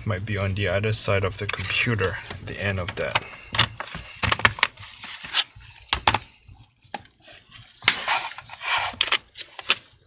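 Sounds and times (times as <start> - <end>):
rustling scraping noise: 1.4 - 6.2, 7.2 - 9.6.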